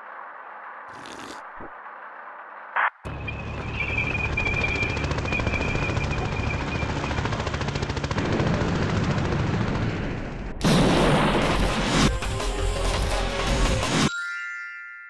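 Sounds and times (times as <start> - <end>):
loud blast: 10.6 - 12.1.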